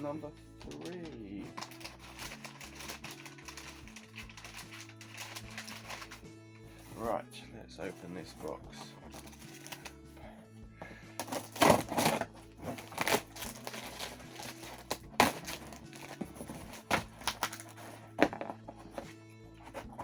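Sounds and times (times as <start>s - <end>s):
cardboard box being torn open: 11.2s - 18.6s.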